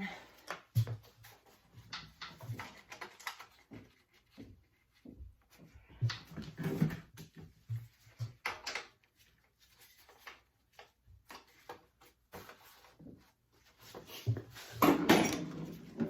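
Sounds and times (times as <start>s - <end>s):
tools clicking and knocking: 1.7s - 3.6s, 8.2s - 9.0s, 14.8s - 16.0s.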